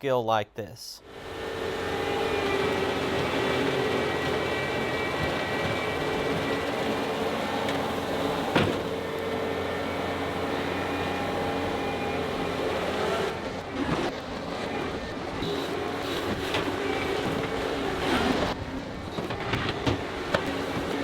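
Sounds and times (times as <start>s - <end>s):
diesel engine running: 1.1s - 17.8s.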